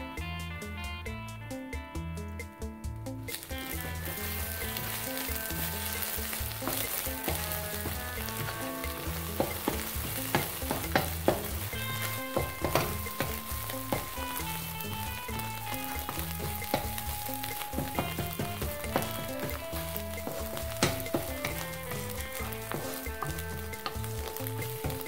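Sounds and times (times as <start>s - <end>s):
food sizzling in oil: 3.2s - 25.0s
utensil knocking against pan: 5.7s - 25.0s.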